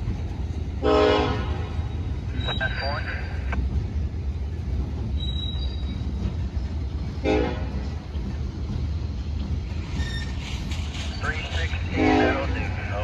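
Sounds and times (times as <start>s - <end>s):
diesel locomotive rumbling: 0.0s - 13.0s
locomotive horn toot: 0.8s - 1.7s, 7.2s - 7.7s, 11.9s - 12.6s.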